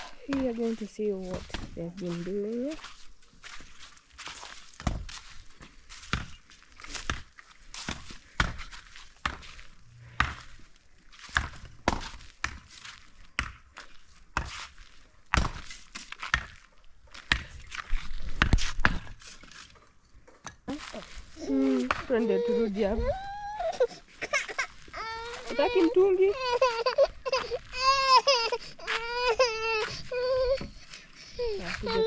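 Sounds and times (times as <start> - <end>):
footsteps thudding: 0.2 - 19.5.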